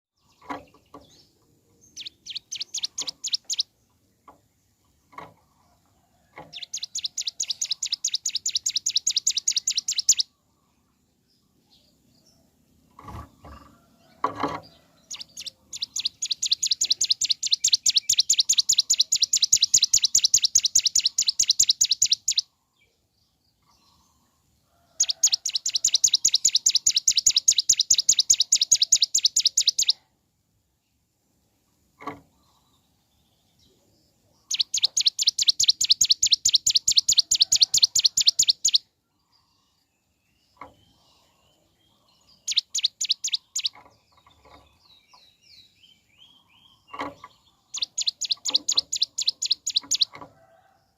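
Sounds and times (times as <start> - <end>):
bird singing rattling trill: 0.2 - 5.6, 6.2 - 10.4, 13.0 - 22.6, 24.9 - 30.1, 34.4 - 38.9, 40.2 - 50.3.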